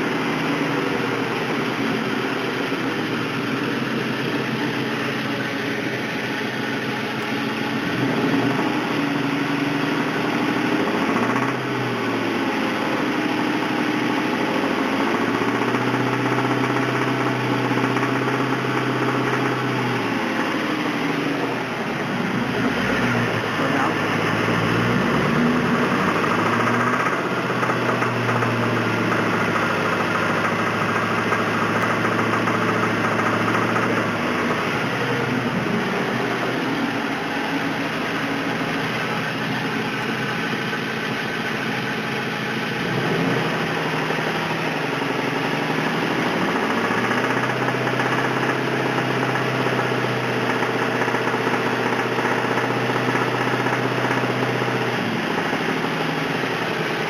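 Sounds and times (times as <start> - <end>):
car engine with rod knock: 23.6 - 36.5, 39.4 - 57.0.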